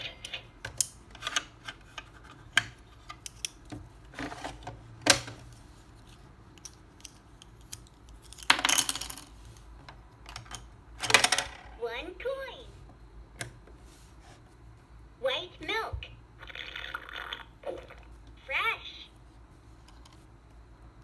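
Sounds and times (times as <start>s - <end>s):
coins rattling: 6.6s - 9.4s.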